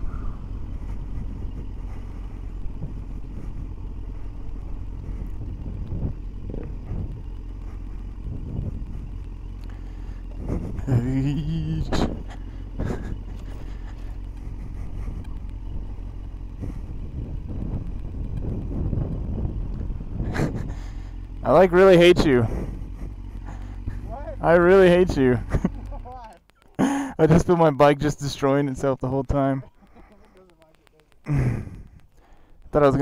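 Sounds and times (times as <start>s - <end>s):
wind rumble: 0.0s - 26.0s
motorcycle engine: 0.0s - 33.0s.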